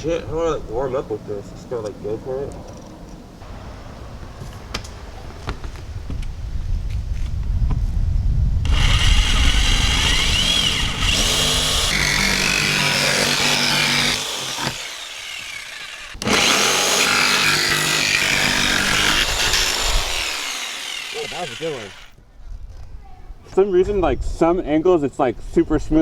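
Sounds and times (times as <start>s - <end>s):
jigsaw cutting sheet metal: 8.7s - 22.2s.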